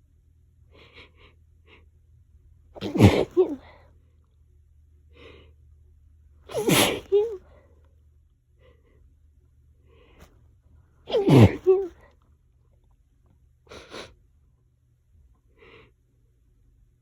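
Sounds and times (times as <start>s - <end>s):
person sneezing: 2.8s - 3.8s, 6.5s - 7.4s, 11.1s - 12.0s
soft breaths: 5.0s - 5.8s, 6.5s - 12.2s.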